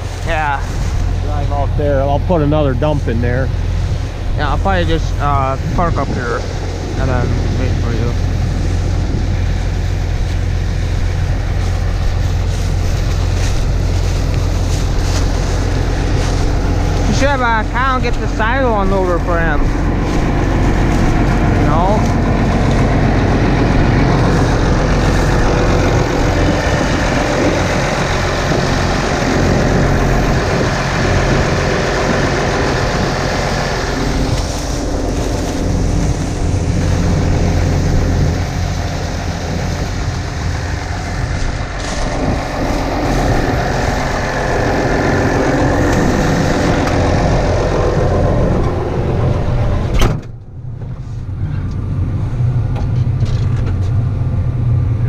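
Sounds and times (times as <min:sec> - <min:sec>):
farm machine engine droning: 0:00.0 - 0:55.0.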